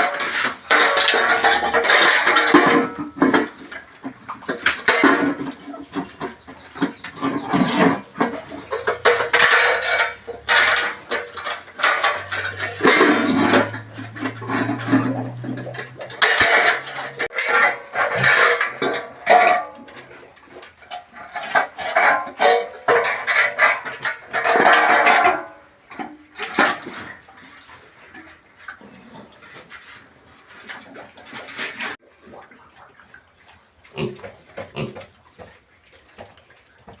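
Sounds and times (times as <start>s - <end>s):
pigs squealing and grunting: 5.6s - 17.1s, 33.9s - 35.5s.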